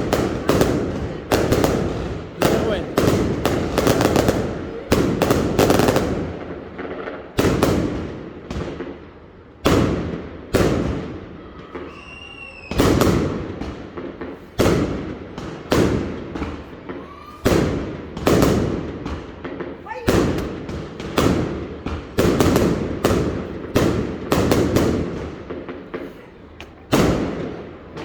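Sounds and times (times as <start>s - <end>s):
fireworks bangs with echo: 0.0s - 28.0s
firework whistle: 11.1s - 13.5s.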